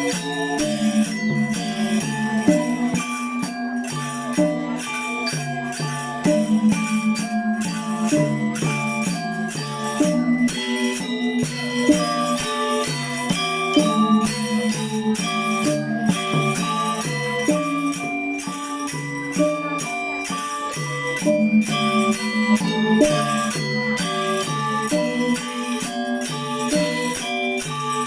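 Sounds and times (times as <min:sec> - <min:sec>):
gamelan ensemble playing: 0:00.0 - 0:28.0.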